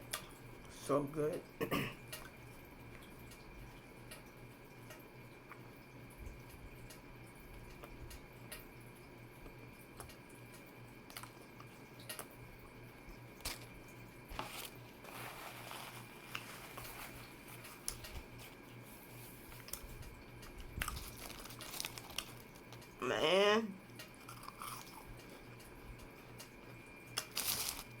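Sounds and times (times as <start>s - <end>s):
quiet chewing: 0.0s - 0.7s, 6.4s - 8.7s, 9.4s - 23.0s, 23.8s - 28.0s
faint steady hum: 0.0s - 28.0s
wet mouth clicks and smacks: 0.1s - 0.3s.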